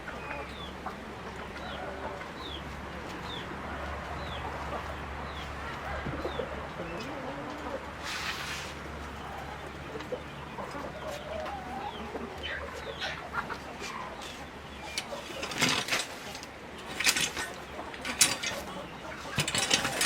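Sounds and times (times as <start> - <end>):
chickens clucking softly: 0.0 - 20.0
short scraping noise: 8.0 - 8.8.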